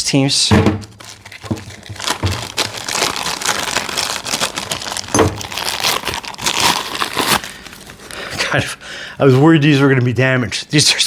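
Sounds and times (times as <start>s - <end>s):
plastic wrapping crinkling: 0.8s - 8.6s.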